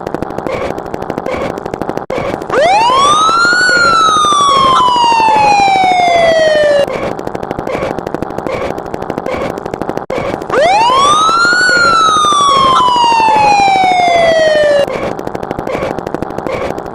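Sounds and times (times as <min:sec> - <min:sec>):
fast steady rattling: 0:00.0 - 0:16.9
siren-like sweeping tone: 0:02.5 - 0:07.1, 0:10.5 - 0:15.1.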